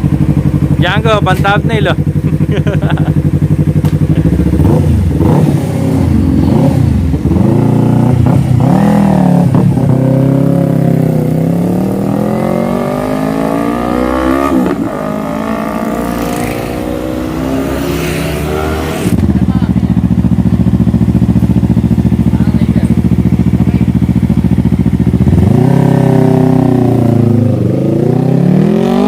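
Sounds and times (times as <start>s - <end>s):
motorcycle engine accelerating: 0.0s - 29.0s.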